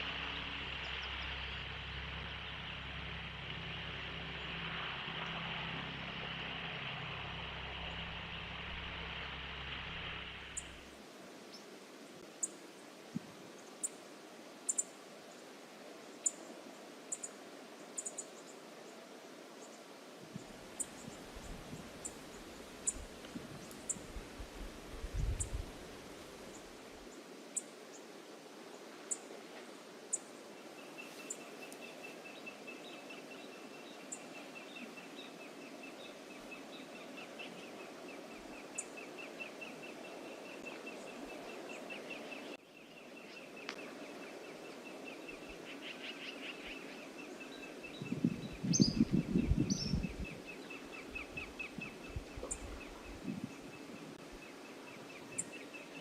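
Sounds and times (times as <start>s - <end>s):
wind and ocean hiss: 0.0s - 56.0s
low rustling or buffeting: 47.9s - 50.6s.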